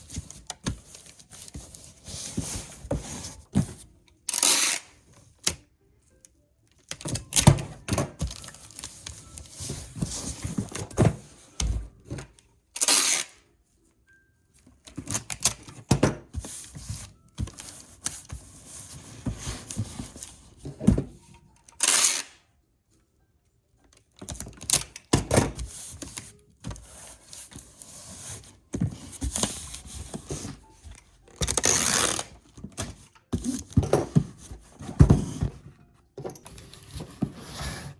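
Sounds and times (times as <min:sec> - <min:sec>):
cardboard box knocks and thumps: 0:33.4 - 0:35.6.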